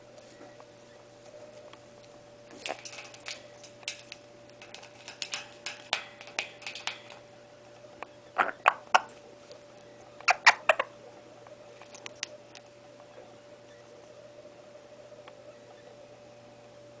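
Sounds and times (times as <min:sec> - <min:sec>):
faint steady hum: 0:00.0 - 0:17.0
parrot clicking: 0:02.6 - 0:07.2.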